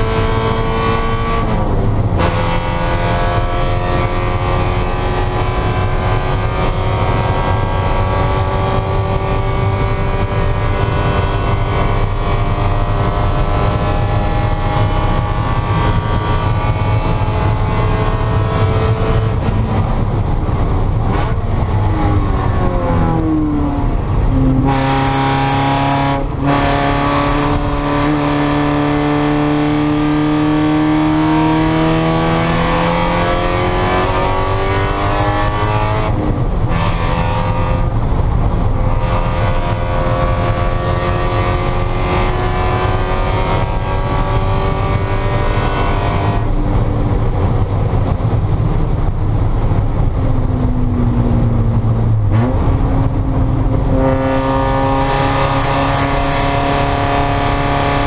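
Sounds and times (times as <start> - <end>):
race car engine at full throttle: 0.0 - 58.0.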